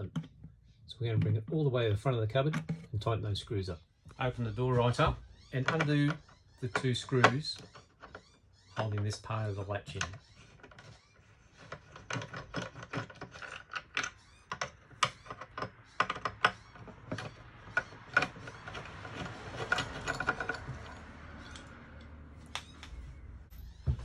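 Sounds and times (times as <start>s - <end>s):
screwdriver scraping: 5.6s - 24.0s.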